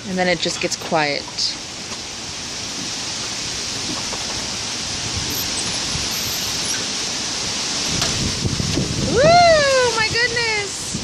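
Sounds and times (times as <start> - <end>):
storm rain and wind: 0.0 - 11.0.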